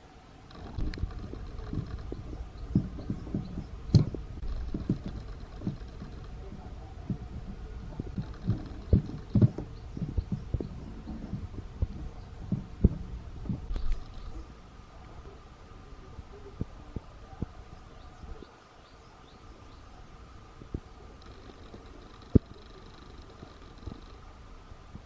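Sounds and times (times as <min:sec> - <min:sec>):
soft knocks and clicks: 0:00.5 - 0:14.4.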